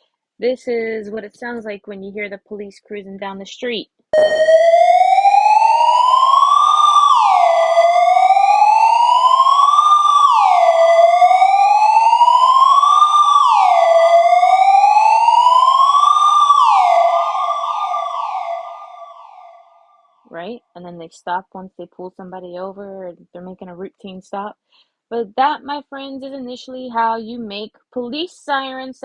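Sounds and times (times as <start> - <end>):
synthesizer siren wail: 4.2 - 20.2.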